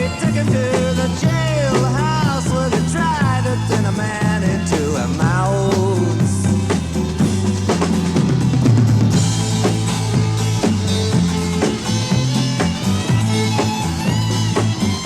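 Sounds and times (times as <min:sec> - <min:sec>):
bass line: 0:00.0 - 0:15.0
drum kit: 0:00.0 - 0:15.0
instrumental rock band: 0:00.0 - 0:15.0.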